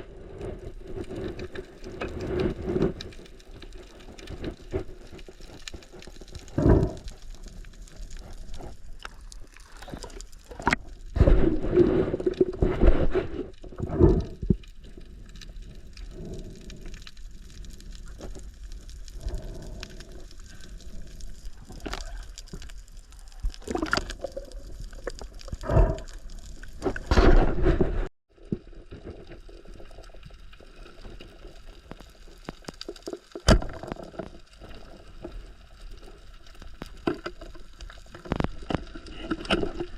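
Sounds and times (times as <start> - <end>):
water splashing: 23.2 - 27.1.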